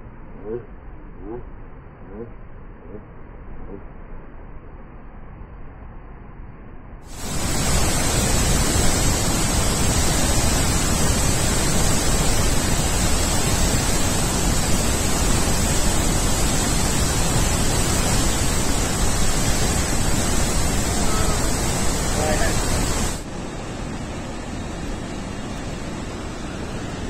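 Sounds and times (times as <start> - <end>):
roar of rushing water: 7.1 - 27.0.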